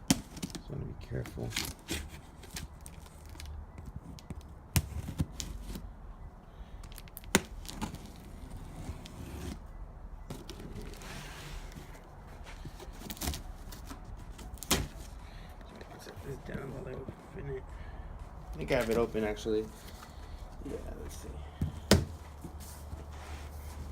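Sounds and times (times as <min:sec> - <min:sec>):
scraping and rustling: 0:10.3 - 0:17.6, 0:22.1 - 0:23.9.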